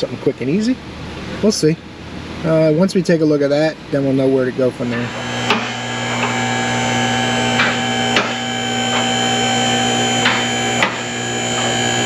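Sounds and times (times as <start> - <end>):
hydraulic lift humming and whining: 4.8 - 12.0.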